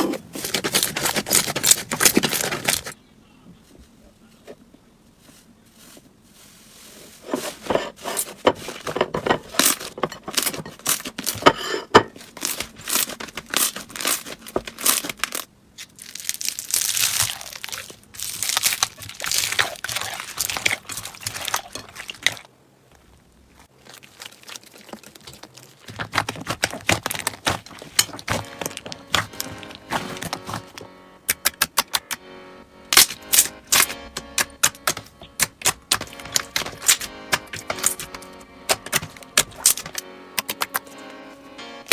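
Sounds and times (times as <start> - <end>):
slime squelching and clicking: 33.0 - 40.9.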